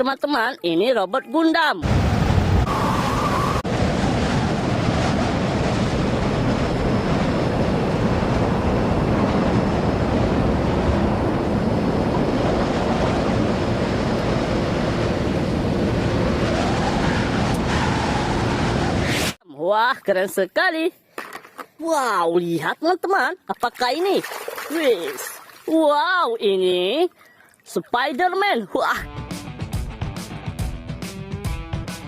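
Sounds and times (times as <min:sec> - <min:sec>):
running water rushing: 0:23.6 - 0:26.2.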